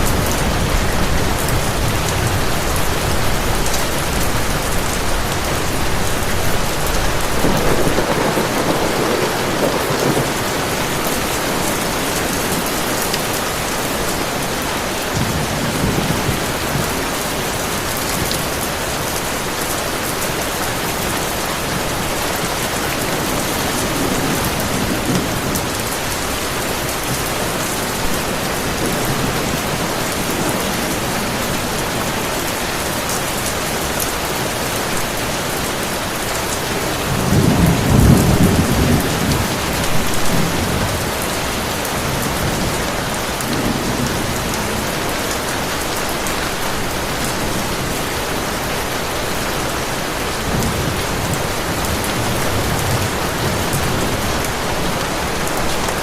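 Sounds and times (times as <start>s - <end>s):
thunder rolling: 0.0s - 13.0s
heavy rain: 0.0s - 56.0s.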